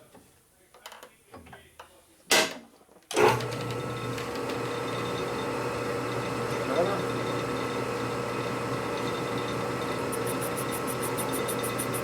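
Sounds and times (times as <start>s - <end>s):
lathe motor humming: 3.4s - 12.0s.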